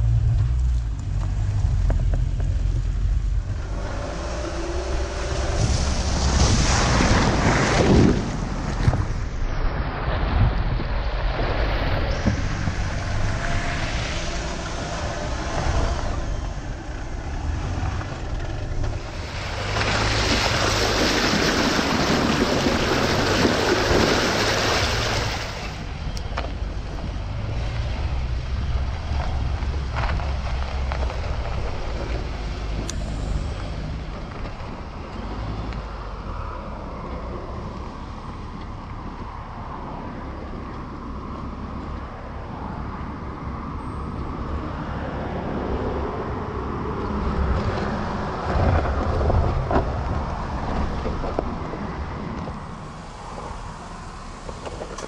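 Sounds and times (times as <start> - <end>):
road and wind noise: 0.0 - 55.0
loud rushing noise: 3.6 - 26.1.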